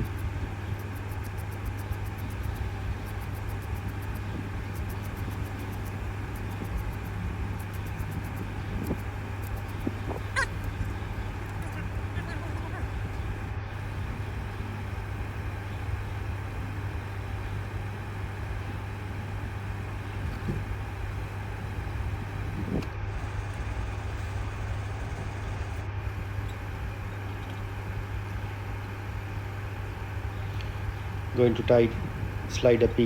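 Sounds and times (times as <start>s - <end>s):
low mechanical hum: 0.0s - 33.0s.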